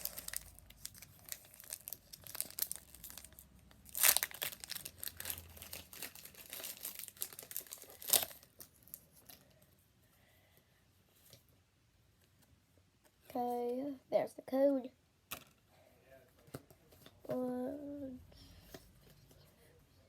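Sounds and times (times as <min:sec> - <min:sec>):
foil wrapper ripping: 0:00.0 - 0:09.0
foil wrapper crinkling: 0:00.0 - 0:09.4.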